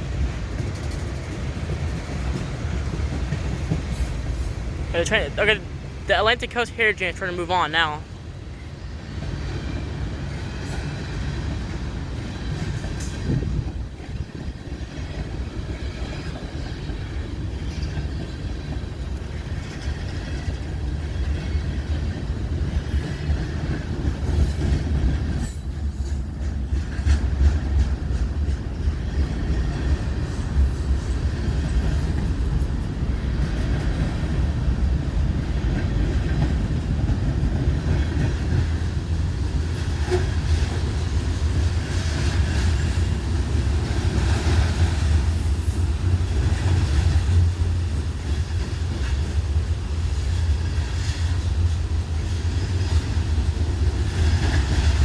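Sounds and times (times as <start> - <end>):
freight train wheels rumbling: 0.0 - 55.0.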